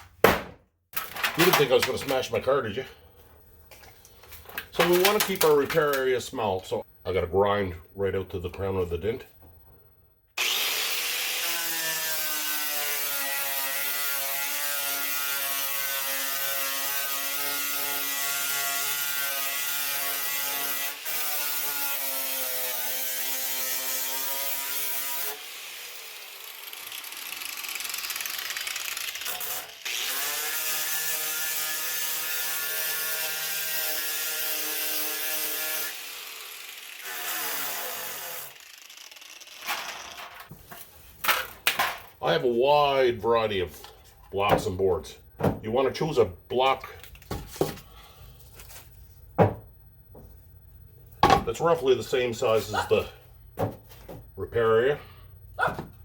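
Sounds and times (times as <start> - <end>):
angle grinder whining: 10.4 - 40.5.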